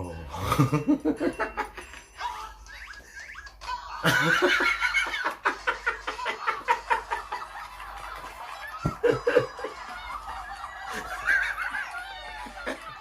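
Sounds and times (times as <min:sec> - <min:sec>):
hearty laughter: 0:00.4 - 0:02.5, 0:03.8 - 0:13.0.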